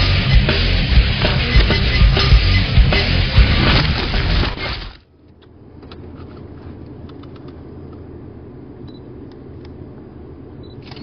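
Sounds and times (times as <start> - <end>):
music: 0.0 - 4.8.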